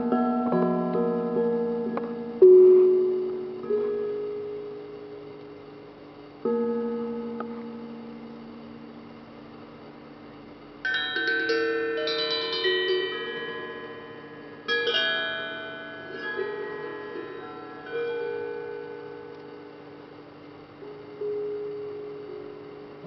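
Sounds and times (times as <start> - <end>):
struck iron metal notes ringing: 10.9 - 23.0.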